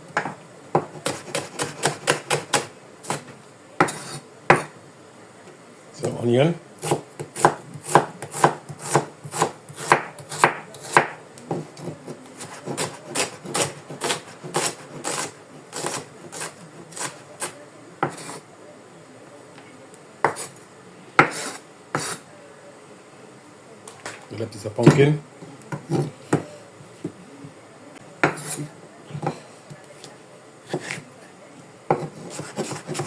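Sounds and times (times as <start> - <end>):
knife chopping on cutting board: 0.2 - 4.7, 6.8 - 18.4, 20.2 - 20.5, 21.2 - 22.2, 25.7 - 26.5, 28.2 - 29.4, 30.7 - 31.0, 31.9 - 33.0.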